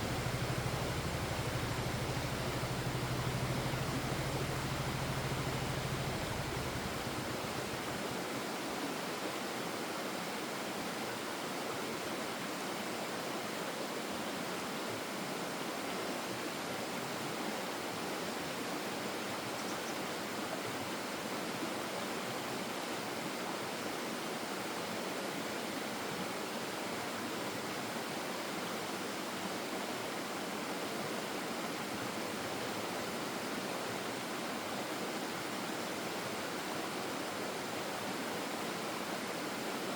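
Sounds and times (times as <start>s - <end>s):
water rushing over rocks: 0.0s - 9.2s.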